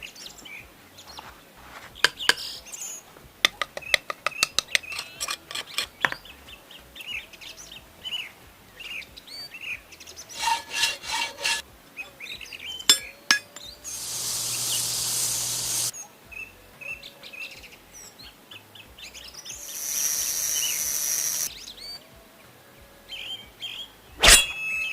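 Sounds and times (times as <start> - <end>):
small birds chirping: 0.0 - 10.7, 12.0 - 22.0
abrasive rubbing on metal: 10.3 - 11.6, 12.9 - 15.9.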